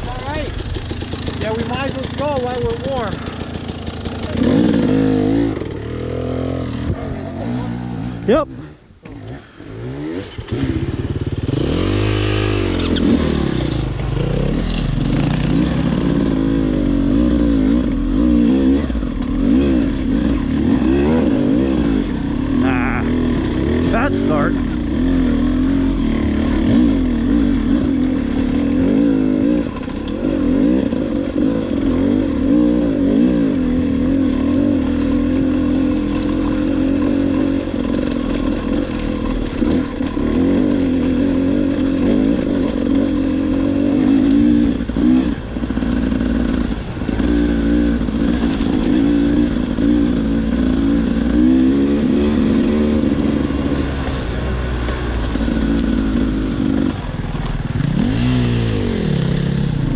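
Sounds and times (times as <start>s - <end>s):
dirt bike engine revving: 0.0s - 59.9s.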